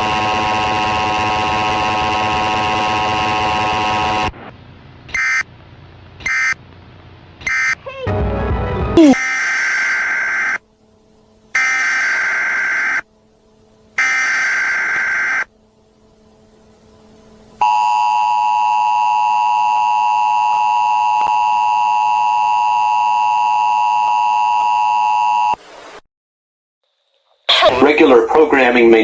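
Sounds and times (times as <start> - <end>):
buzzy digital data bursts: 9.0 - 10.6, 11.5 - 13.1, 14.0 - 15.5.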